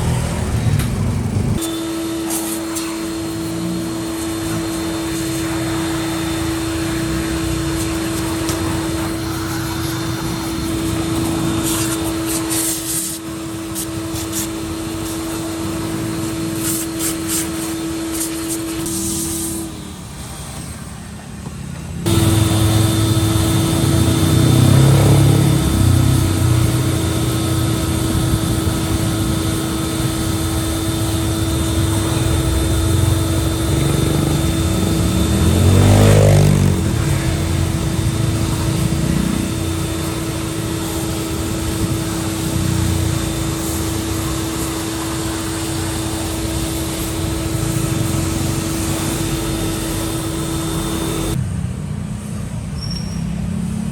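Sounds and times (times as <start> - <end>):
low engine rumble: 0.0 - 1.6, 21.0 - 52.6
vehicle passing: 0.0 - 1.6, 5.3 - 13.1, 21.9 - 29.5, 32.0 - 43.4
steady mechanical hum: 0.0 - 52.9.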